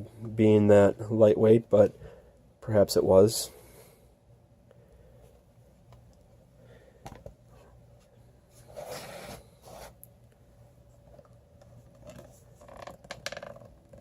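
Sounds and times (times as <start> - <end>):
plastic scraping and rubbing: 11.8 - 14.0.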